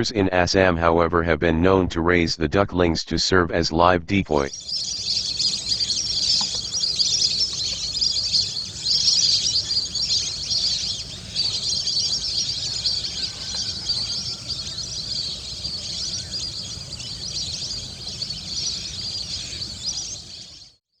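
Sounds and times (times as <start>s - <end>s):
chorus of birds chirping: 4.3s - 20.8s.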